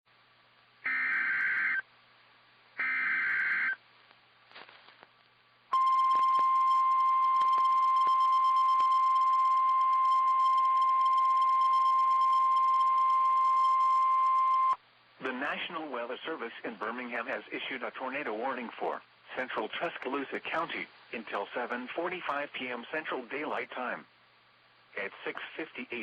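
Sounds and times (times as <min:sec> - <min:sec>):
steady warning alarm tone: 0:00.9 - 0:01.8, 0:02.8 - 0:03.8, 0:05.8 - 0:14.8.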